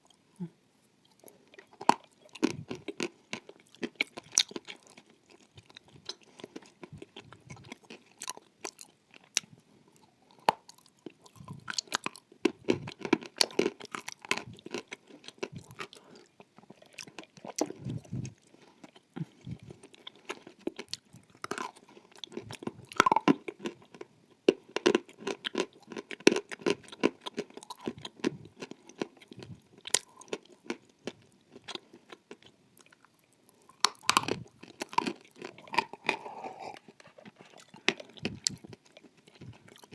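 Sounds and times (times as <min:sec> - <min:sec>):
grinding chewing: 0:01.0 - 0:39.9
crunchy biting: 0:33.7 - 0:39.9.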